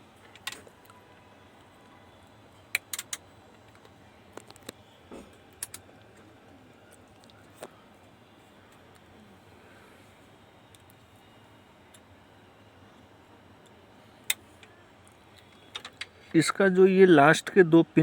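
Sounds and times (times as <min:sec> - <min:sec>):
faint steady background: 0:00.0 - 0:18.0
light clicks and taps of tools: 0:06.9 - 0:07.8.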